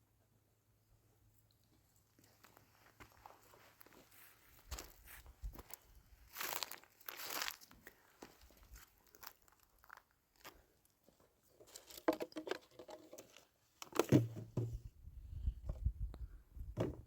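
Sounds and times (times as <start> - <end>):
rustling and crinkles: 2.1 - 14.8.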